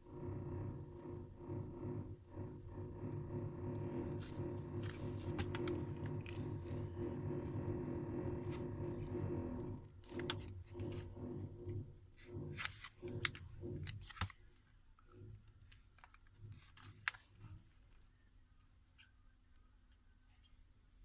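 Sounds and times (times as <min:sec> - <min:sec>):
electric hum: 0:00.0 - 0:14.3
tools clicking and scraping on phone: 0:00.6 - 0:18.1.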